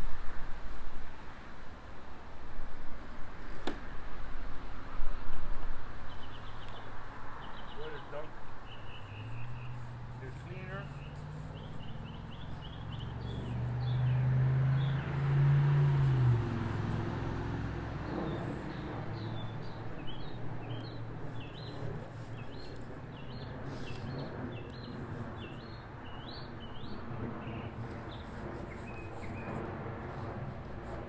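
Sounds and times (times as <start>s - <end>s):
small birds chirping: 6.1s - 17.0s, 18.0s - 30.3s.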